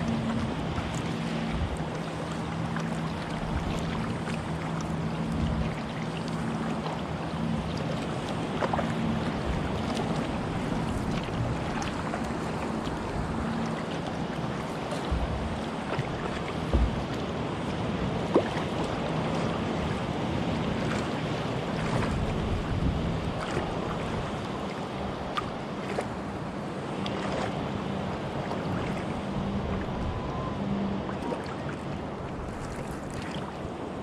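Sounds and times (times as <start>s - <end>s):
wind on microphone: 0.0s - 25.6s, 28.2s - 31.4s
low steady hum: 0.0s - 34.0s
water lapping around a kayak: 0.0s - 34.0s
sharp knocks: 16.7s - 17.1s.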